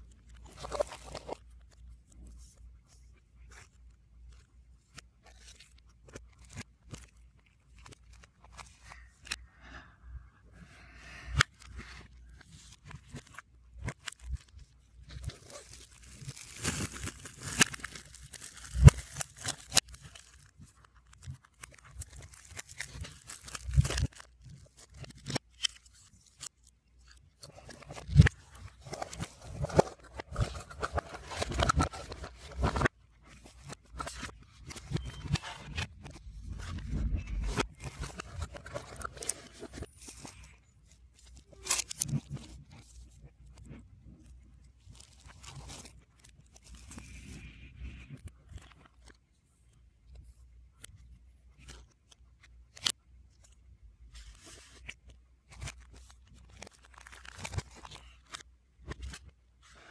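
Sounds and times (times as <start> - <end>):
reversed packaging crinkling and tearing: 0.1 - 2.6, 11.4 - 40.6, 41.2 - 44.2, 44.8 - 49.2, 52.7 - 59.9.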